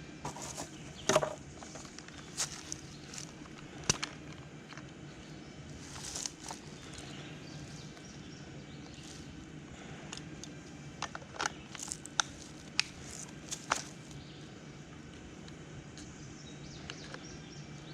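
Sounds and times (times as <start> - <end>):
steady low hum: 0.0 - 17.9
sharp snaps and clicks: 10.1 - 14.0.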